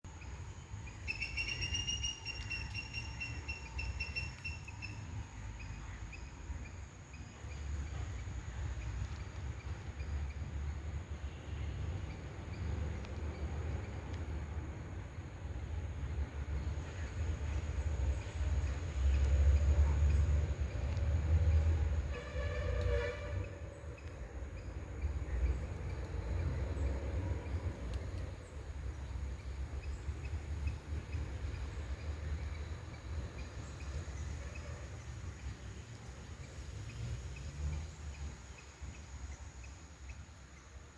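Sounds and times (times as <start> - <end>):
faint bird chirps: 0.2 - 8.1.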